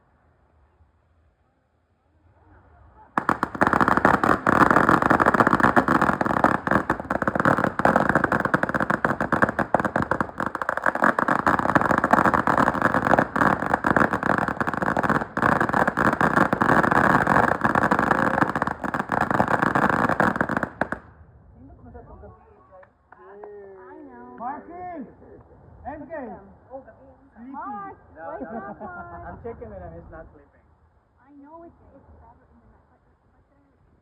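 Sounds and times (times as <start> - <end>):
ground firework crackling: 3.2 - 21.1.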